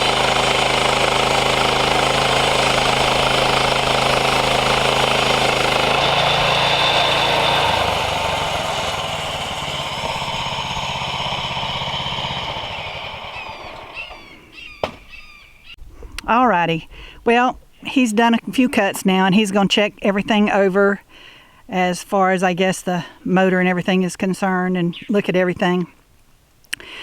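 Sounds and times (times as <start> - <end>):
sawmill gas engine running: 0.0 - 15.0
bandsaw blade cutting log: 0.0 - 15.2.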